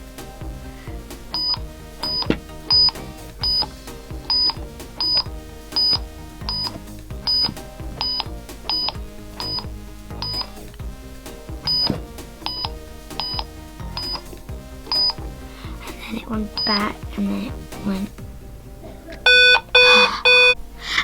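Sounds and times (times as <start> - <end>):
background music: 0.0 - 21.0
shrill electronic beeps: 1.3 - 10.7, 11.6 - 15.4, 16.5 - 17.1, 19.3 - 20.6.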